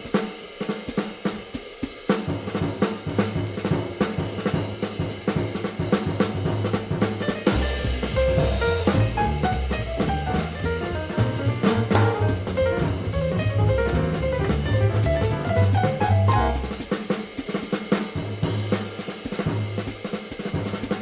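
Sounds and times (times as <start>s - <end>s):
cymbal and drum strokes: 0.0s - 21.0s
piano line: 7.3s - 16.8s
walking double bass: 7.5s - 16.8s.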